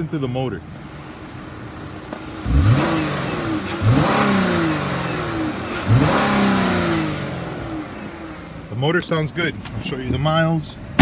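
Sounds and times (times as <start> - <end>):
car engine revving: 0.6 - 8.8.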